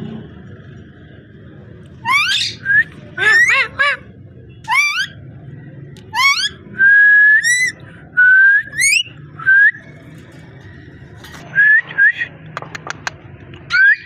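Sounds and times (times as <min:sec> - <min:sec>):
parrot whistling: 0:02.0 - 0:04.0, 0:04.7 - 0:05.2, 0:06.1 - 0:09.8.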